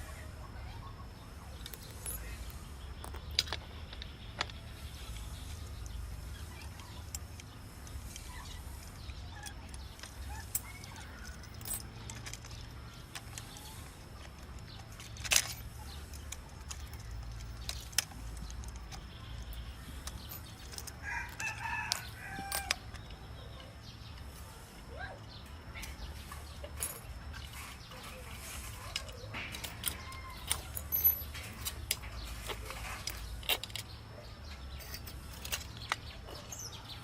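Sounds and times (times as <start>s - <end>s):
rooster crowing: 21.0s - 22.9s.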